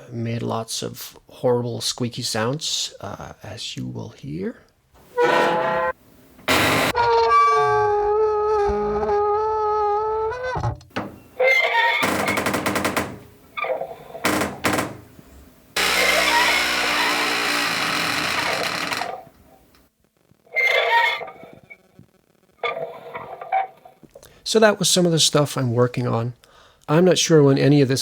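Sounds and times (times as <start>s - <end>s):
metal stove squeaking: 5.0s - 7.0s, 10.2s - 19.4s, 20.6s - 21.8s
creaks and rasps: 5.0s - 24.3s
rough metal scrape: 5.1s - 6.0s.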